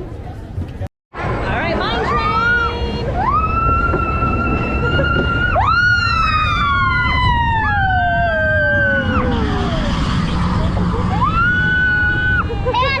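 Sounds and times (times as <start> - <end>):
people screaming: 1.9 - 13.0.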